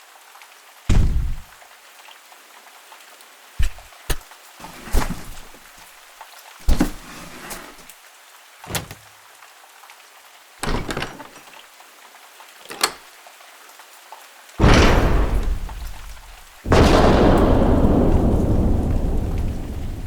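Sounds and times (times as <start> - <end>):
rain-like background hiss: 0.0 - 20.0
impact thuds and hits: 0.9 - 1.4, 14.6 - 20.0.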